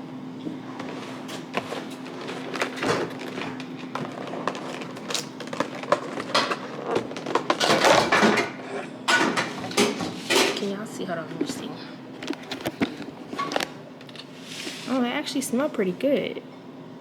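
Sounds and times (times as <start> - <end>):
plastic packaging rustling: 0.6 - 8.5, 11.4 - 15.0
packaging clicks: 0.8 - 7.9.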